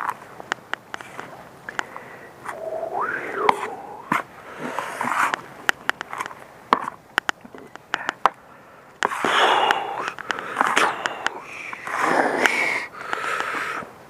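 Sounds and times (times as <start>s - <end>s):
sharp little clicks: 9.0s - 13.9s.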